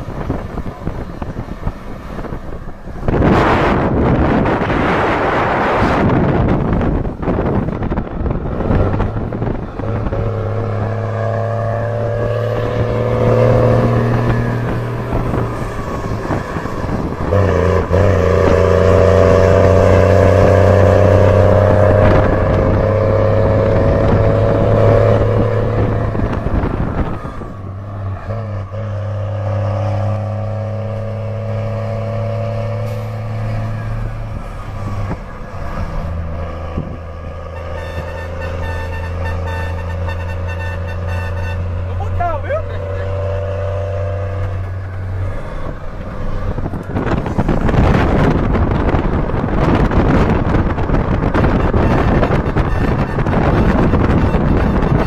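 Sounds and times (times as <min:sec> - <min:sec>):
truck diesel engine running: 0:00.0 - 0:29.6.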